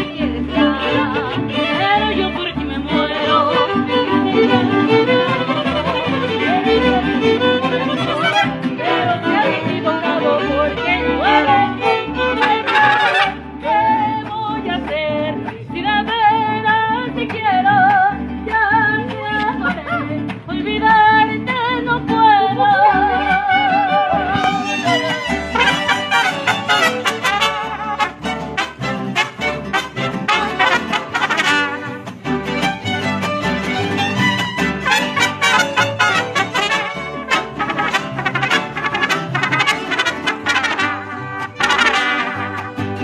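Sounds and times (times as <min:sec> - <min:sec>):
violins playing melody: 0:00.0 - 0:13.8, 0:23.5 - 0:43.0
strummed guitar rhythm: 0:00.0 - 0:43.0.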